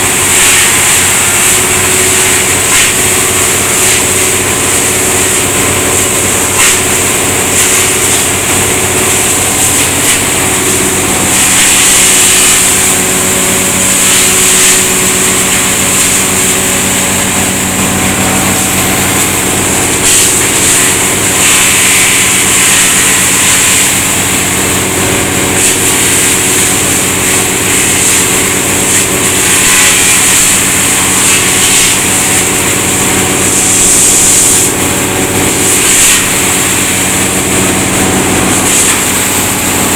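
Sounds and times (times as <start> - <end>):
high hissing grind: 0.0 - 39.9
wood chipper engine drone: 0.0 - 39.9.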